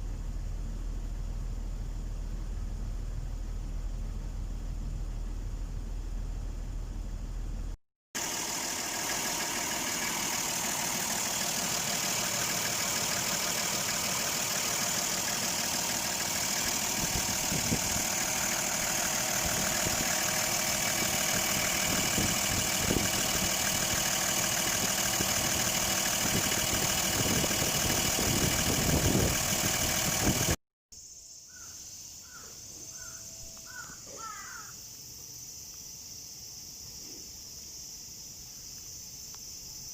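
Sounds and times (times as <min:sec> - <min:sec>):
engine idling: 0:00.0 - 0:30.6.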